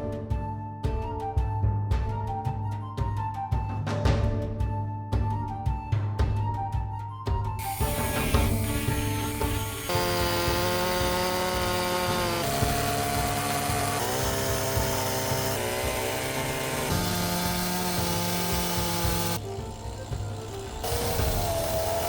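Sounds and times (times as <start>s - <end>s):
chainsaw cutting wood: 7.6s - 22.0s.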